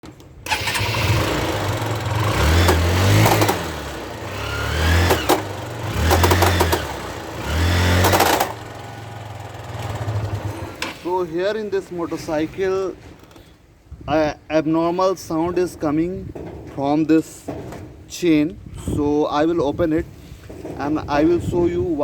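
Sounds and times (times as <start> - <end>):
motorcycle engine revving: 0.5 - 11.1
drive chain clicking clatter: 2.0 - 9.0.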